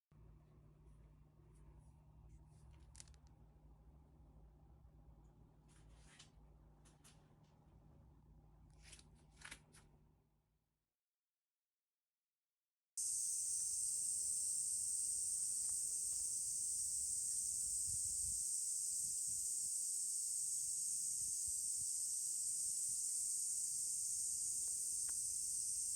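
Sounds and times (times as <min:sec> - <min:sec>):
high-pitched hiss: 0:13.0 - 0:25.9.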